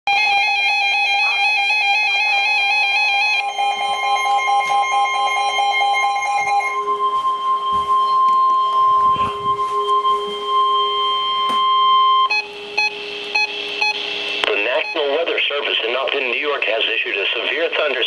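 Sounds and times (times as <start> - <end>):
steady high tone: 0.2 - 15.6
warbling alert tones: 1.1 - 15.2
pulsing tone: 1.2 - 14.4.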